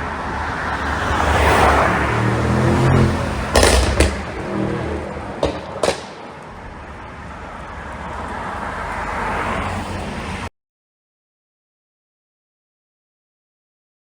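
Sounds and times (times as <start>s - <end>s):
car engine revving: 0.0s - 7.0s
exhaust pops and crackles: 3.4s - 6.6s.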